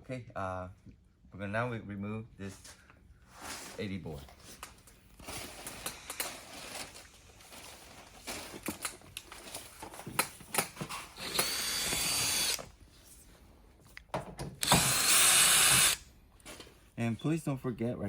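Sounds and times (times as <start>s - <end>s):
electric screwdriver running: 11.2s - 12.6s, 14.6s - 16.0s.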